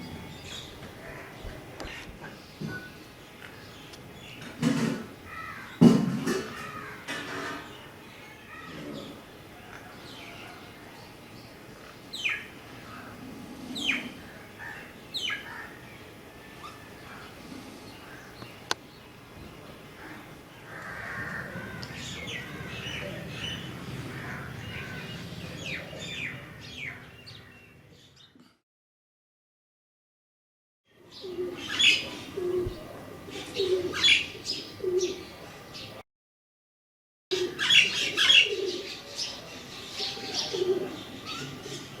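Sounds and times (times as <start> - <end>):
crows calling: 5.2 - 7.7, 12.8 - 15.9, 20.0 - 27.5.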